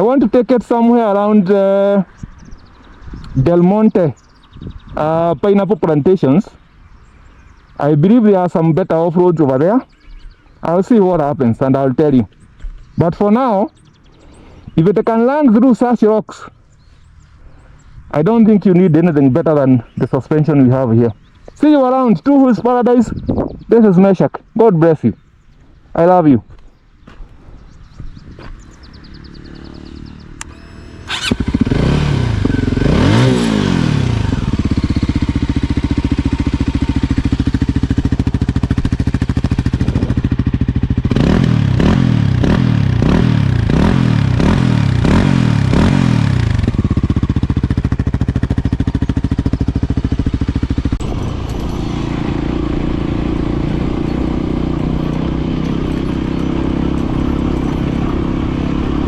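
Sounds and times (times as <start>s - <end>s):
motorcycle engine revving: 27.6s - 59.0s.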